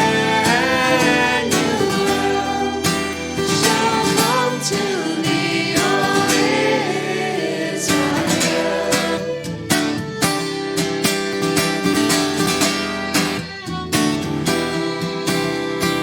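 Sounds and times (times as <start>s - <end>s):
people singing: 0.0s - 11.0s
strummed acoustic guitar: 0.0s - 16.0s.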